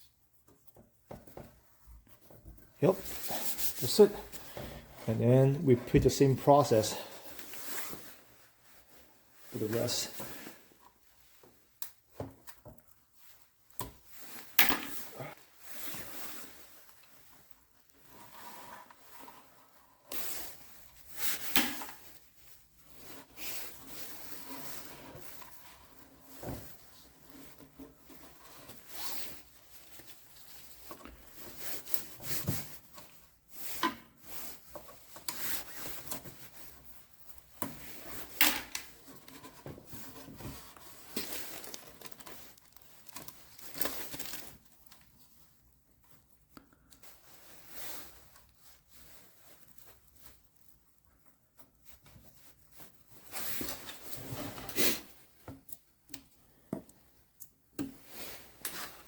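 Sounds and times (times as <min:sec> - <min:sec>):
rubbing and scraping strokes: 0:02.9 - 0:06.8.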